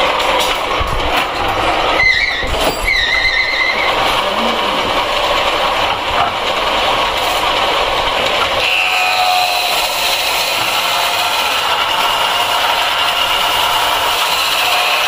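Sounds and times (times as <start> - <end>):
factory machinery running: 0.0 - 15.0
high-pitched squeals: 1.6 - 6.3.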